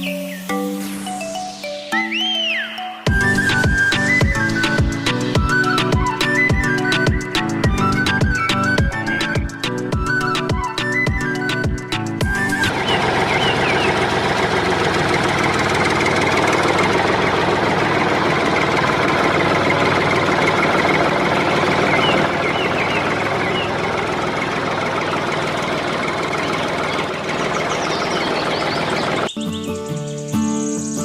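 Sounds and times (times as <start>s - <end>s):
bird chirps: 0.0s - 8.6s, 9.3s - 14.2s, 21.4s - 31.0s
engine with fast knocking beat: 3.1s - 29.3s.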